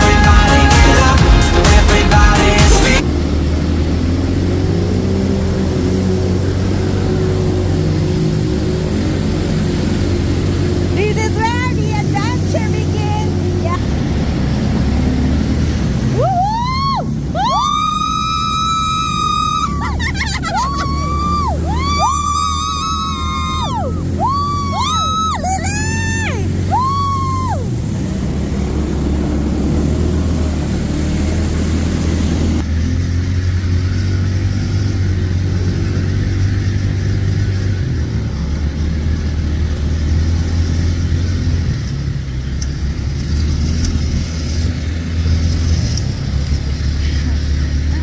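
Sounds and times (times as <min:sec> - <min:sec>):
engine running with low hum: 0:00.0 - 0:48.0
high tone sliding up and down: 0:16.1 - 0:27.8.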